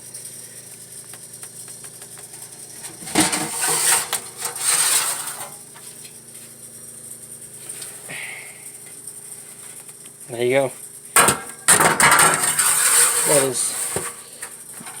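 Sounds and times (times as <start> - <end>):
hard objects clattering in a fridge: 0.8 - 6.3, 11.1 - 15.0.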